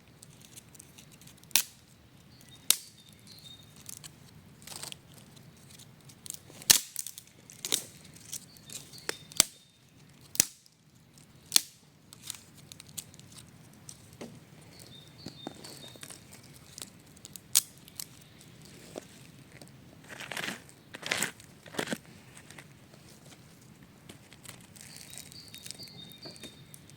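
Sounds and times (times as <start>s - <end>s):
light crinkling: 0.0s - 26.9s
sharp snaps and clicks: 0.2s - 3.2s, 9.1s - 14.2s, 16.0s - 18.5s.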